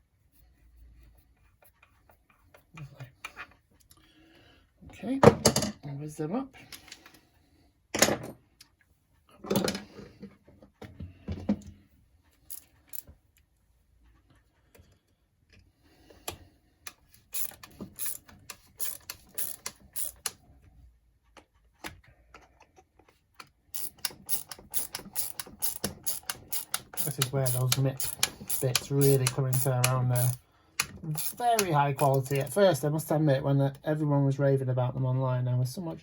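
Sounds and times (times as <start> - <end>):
screwdriver clicking: 16.9 - 20.4, 23.8 - 32.5.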